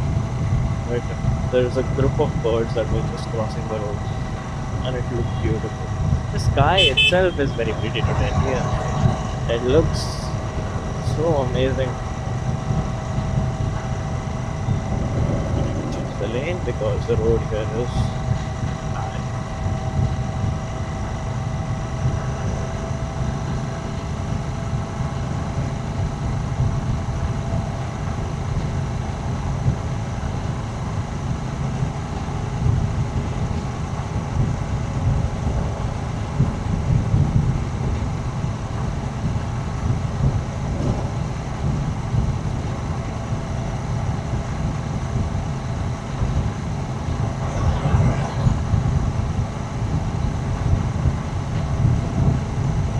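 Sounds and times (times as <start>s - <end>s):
motorcycle engine and exhaust running: 0.0s - 7.4s.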